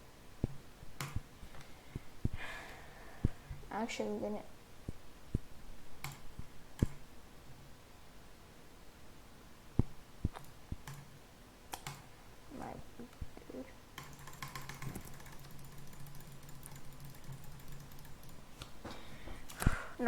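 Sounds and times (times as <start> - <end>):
computer keys clicking: 1.0 - 1.2, 6.0 - 7.0, 10.3 - 11.1, 11.7 - 12.0, 14.0 - 18.7.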